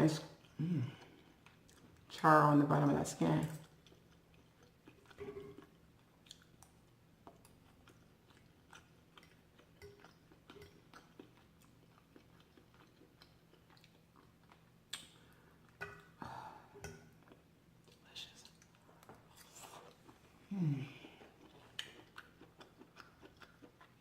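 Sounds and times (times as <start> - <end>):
chewing with mouth clicks: 0.2 - 2.2, 3.5 - 16.2, 16.8 - 24.0
crispy food crunching: 3.6 - 15.2, 17.2 - 24.0.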